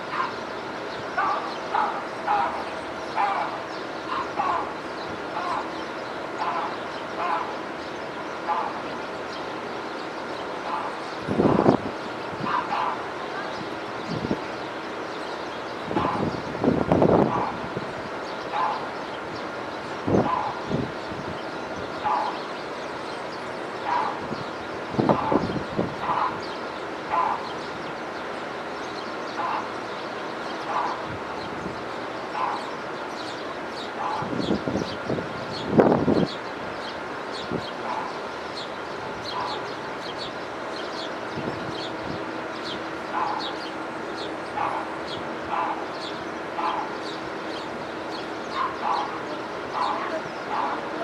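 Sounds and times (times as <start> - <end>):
songbirds chirping: 0.0 - 51.0
steady background hiss: 0.0 - 51.0
short low bird calls: 17.2 - 51.0.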